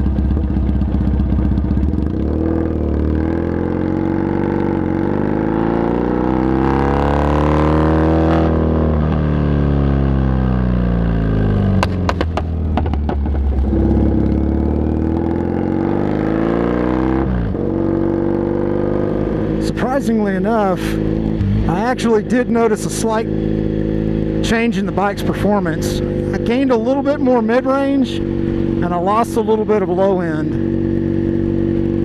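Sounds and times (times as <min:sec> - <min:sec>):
motorcycle engine running loud: 0:00.0 - 0:32.0
exhaust pops: 0:11.8 - 0:14.1.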